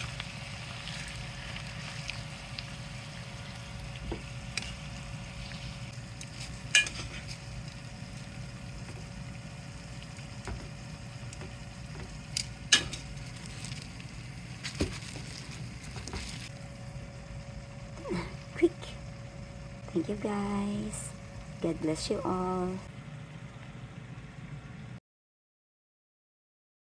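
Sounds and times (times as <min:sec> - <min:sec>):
meat sizzling in a pan: 0:00.0 - 0:19.6.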